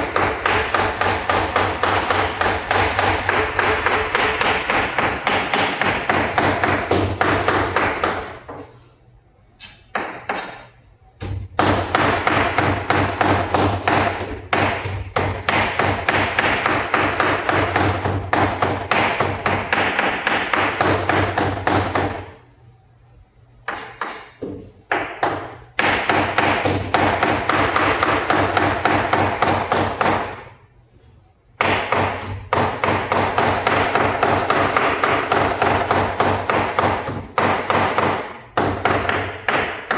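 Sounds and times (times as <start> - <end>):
cleaver chopping meat on block: 0.0 - 8.4, 11.2 - 22.3, 31.6 - 39.9.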